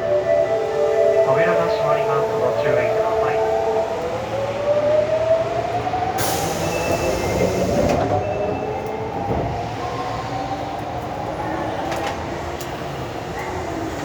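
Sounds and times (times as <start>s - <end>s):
subway train motor whine: 0.0s - 11.2s.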